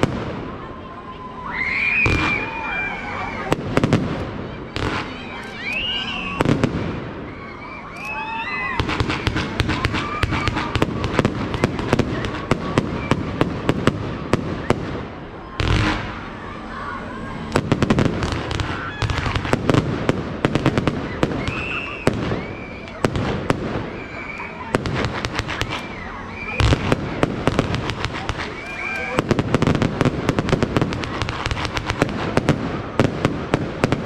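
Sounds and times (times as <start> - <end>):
fireworks bangs and crackles: 0.0 - 1.2, 1.8 - 34.0
heavy firework boom: 6.4 - 7.3, 17.5 - 34.0.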